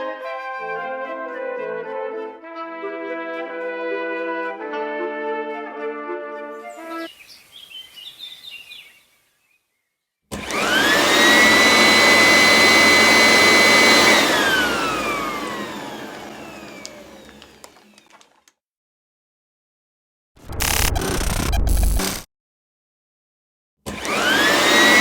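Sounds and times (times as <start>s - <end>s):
vacuum cleaner motor whine: 10.3s - 18.4s, 23.9s - 25.0s.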